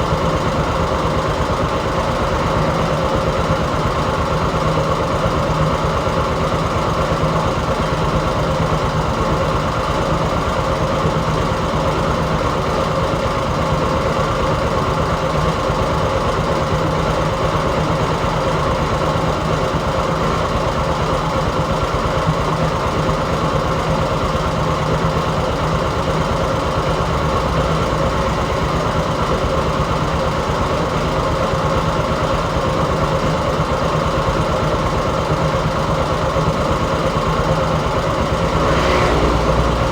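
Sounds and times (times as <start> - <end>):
diesel engine running: 34.8 - 39.9.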